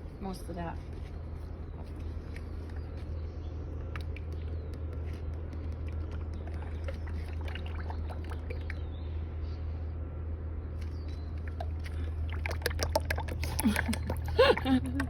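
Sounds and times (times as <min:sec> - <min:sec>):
steady low rumble: 0:00.0 - 0:15.0
oil trickling: 0:01.8 - 0:09.0, 0:10.8 - 0:15.0.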